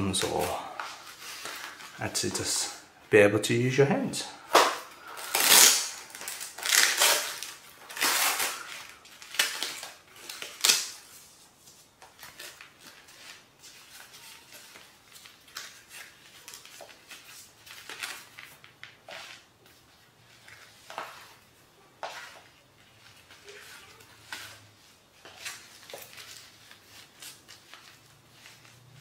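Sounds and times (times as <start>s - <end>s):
packaging crinkling: 4.5s - 11.2s, 11.8s - 21.4s.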